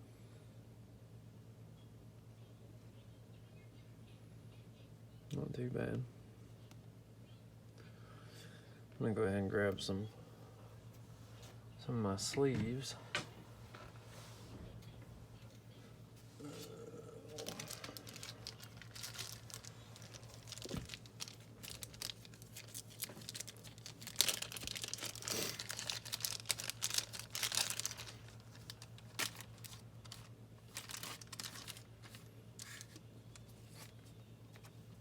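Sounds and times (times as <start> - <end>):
plastic sleeves crinkling: 17.3 - 34.8.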